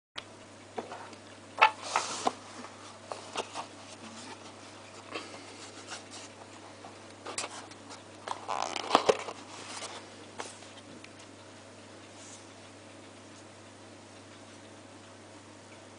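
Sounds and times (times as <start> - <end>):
steady low hum: 0.2 - 15.9
scratchy rustles: 1.7 - 10.9.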